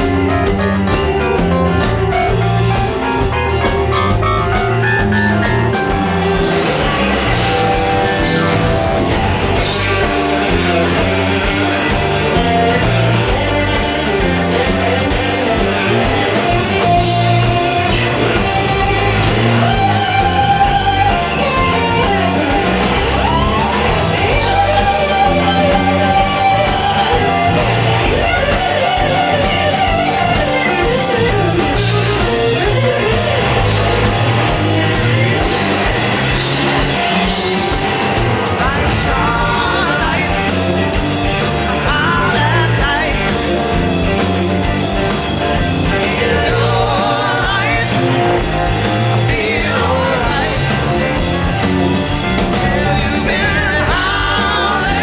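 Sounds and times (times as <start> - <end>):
live rock band playing: 0.0 - 55.0.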